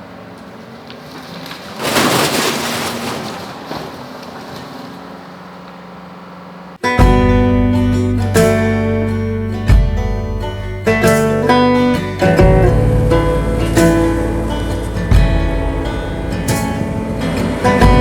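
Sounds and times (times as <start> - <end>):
diesel engine running: 3.9 - 18.0
strummed acoustic guitar music: 6.8 - 18.0
loud burst of noise: 12.3 - 18.0.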